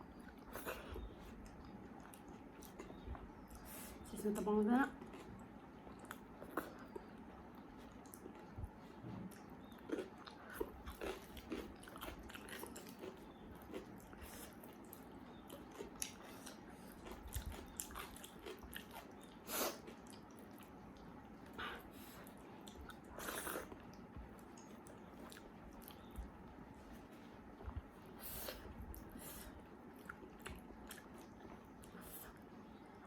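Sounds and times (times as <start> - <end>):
person chewing: 0.2 - 3.7, 5.0 - 32.5.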